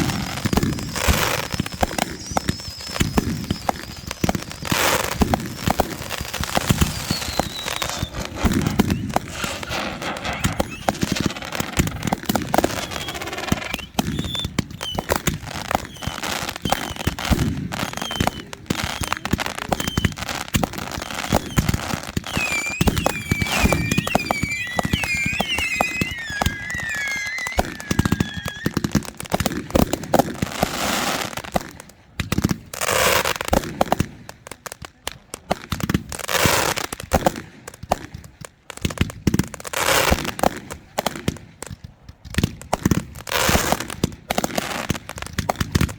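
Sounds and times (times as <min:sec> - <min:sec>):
fireworks whistling glides: 0:00.0 - 0:29.9
fireworks hissing bursts: 0:00.0 - 0:31.4
fireworks crackling and popping: 0:00.0 - 0:45.9.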